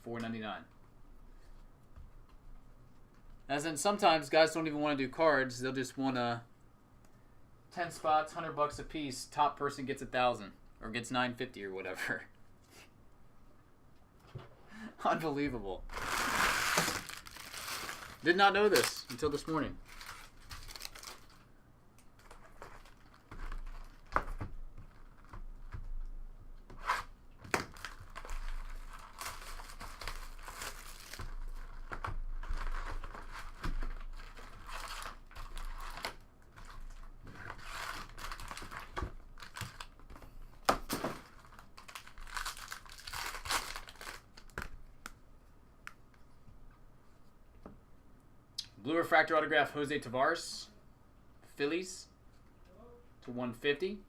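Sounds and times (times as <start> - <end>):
foil wrappers tearing and crinkling: 15.9 - 21.4, 26.8 - 40.0, 40.9 - 44.7.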